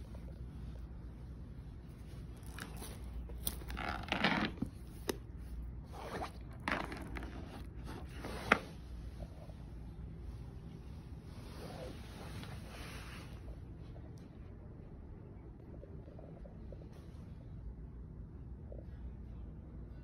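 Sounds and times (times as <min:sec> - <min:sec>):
paper rustling and scraping: 0:05.8 - 0:08.9.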